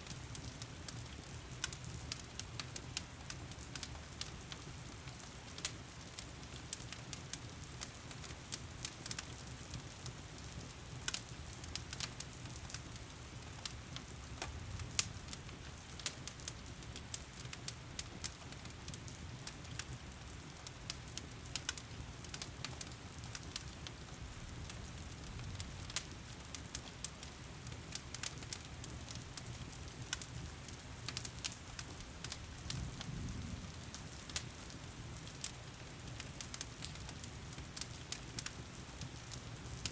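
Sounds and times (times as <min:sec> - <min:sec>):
log fire crackling and popping: 0:00.0 - 0:39.9.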